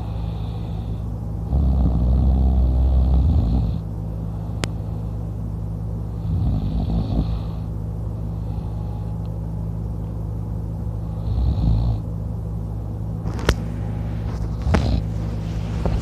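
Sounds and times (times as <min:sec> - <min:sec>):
man snoring: 0:00.0 - 0:03.9, 0:06.1 - 0:07.7, 0:11.0 - 0:12.0, 0:14.6 - 0:15.1
steady low hum: 0:00.0 - 0:16.0.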